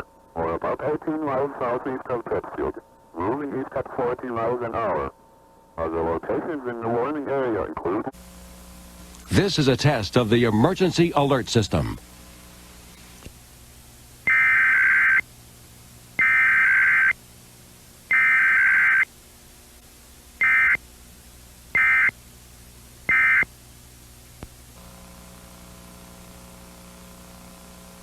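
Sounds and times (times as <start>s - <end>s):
faint steady hum: 0.0s - 28.0s
digital data bursts: 18.1s - 19.1s.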